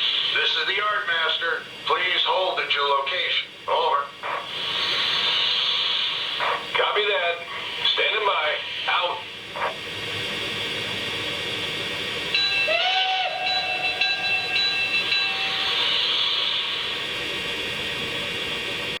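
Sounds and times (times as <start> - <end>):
steam hiss: 0.0 - 3.3, 4.2 - 18.9
chime steam whistle: 12.3 - 17.2.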